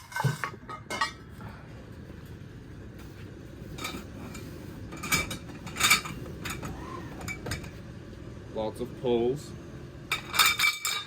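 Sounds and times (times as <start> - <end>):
metal poles clinking: 3.8 - 7.8, 10.1 - 11.0.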